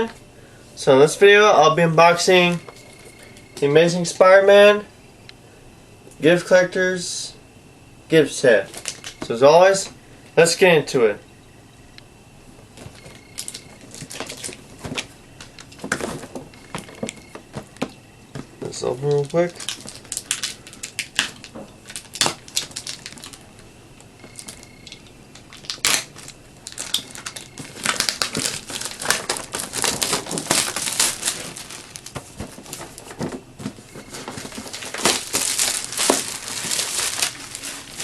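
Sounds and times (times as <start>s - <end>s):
packaging being torn open: 19.1s - 23.4s, 24.3s - 33.2s, 34.0s - 38.0s.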